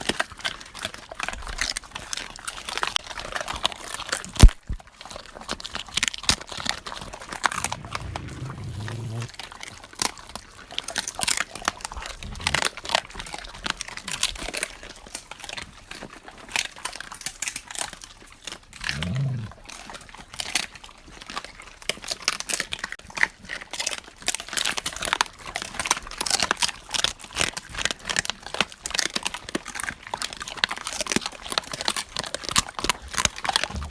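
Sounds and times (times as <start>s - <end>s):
dogs crunching bones: 0.0s - 33.9s
brief low pitched sound: 7.5s - 9.3s.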